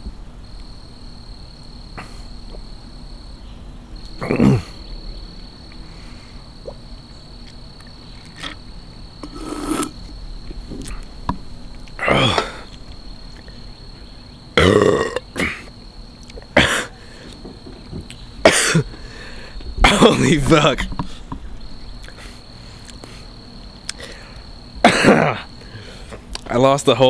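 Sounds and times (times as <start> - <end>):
man belching loudly: 4.2 - 4.8, 12.0 - 12.7, 14.6 - 15.7, 19.8 - 21.0, 24.8 - 25.5.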